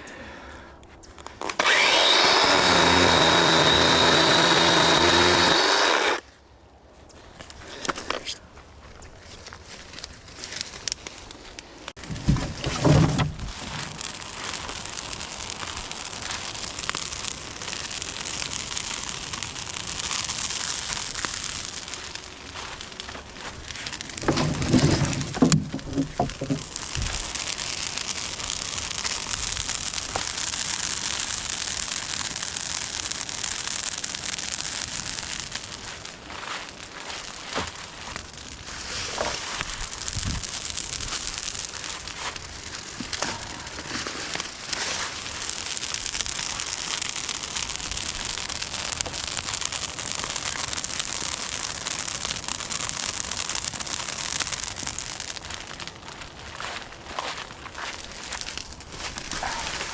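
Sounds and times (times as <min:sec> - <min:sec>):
knocks and rustles: 0:12.0 - 0:14.0, 0:24.1 - 0:26.7
rain falling: 0:15.6 - 0:16.4.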